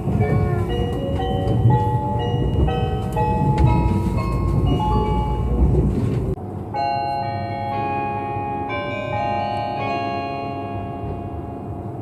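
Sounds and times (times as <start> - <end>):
low train rumble: 0.0 - 12.0
electronic bell-like chime melody: 6.7 - 11.8.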